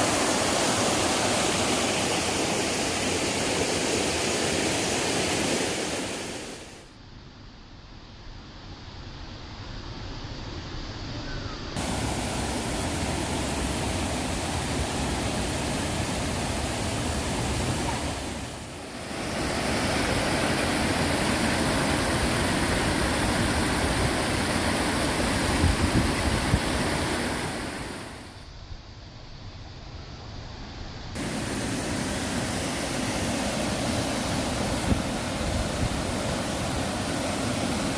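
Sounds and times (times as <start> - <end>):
stream and waterfall rushing: 0.0 - 6.9, 11.8 - 28.5, 31.2 - 37.9.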